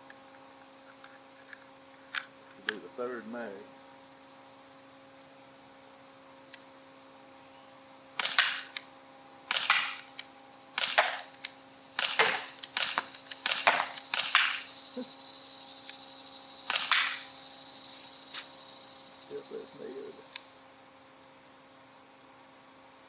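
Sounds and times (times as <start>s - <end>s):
pellet pistol shots: 8.2s - 8.8s, 9.5s - 10.2s, 10.8s - 11.3s, 12.0s - 14.7s, 16.7s - 17.3s.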